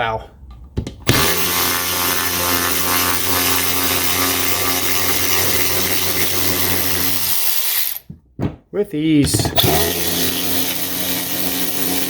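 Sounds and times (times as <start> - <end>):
cordless ratchet running: 1.1 - 8.0, 9.6 - 12.0.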